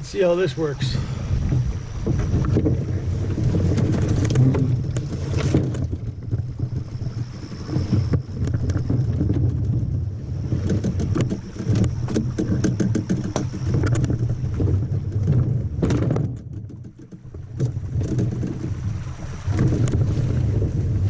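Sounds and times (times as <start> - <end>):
canoe knocking and scraping: 0.0 - 21.0
wind rumbling on microphone: 0.0 - 21.0.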